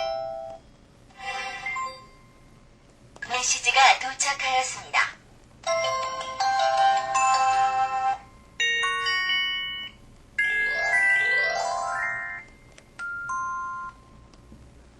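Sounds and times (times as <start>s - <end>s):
phone chiming chord: 5.7s - 14.2s.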